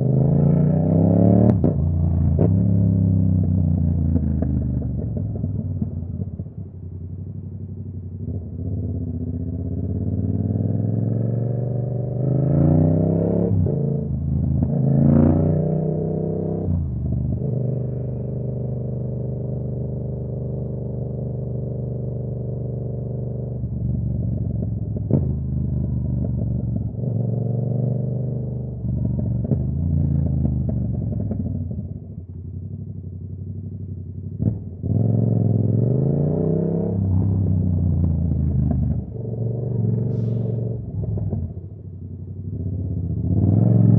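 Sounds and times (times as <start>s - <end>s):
motorcycle engine revving: 8.5s - 22.0s, 32.7s - 43.9s.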